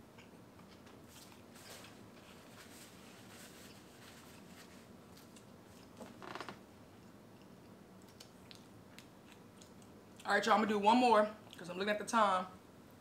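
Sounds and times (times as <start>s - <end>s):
soft handling of food: 0.6s - 10.0s
quiet chewing: 3.6s - 6.1s, 6.9s - 10.3s, 11.4s - 11.6s.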